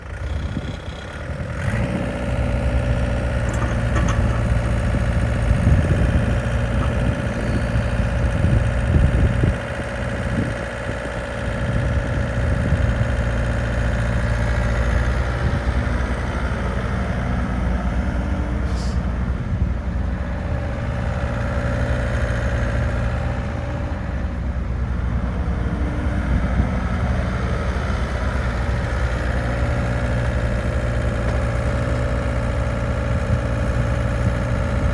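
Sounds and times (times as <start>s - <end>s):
excavator diesel engine running: 0.0s - 34.9s.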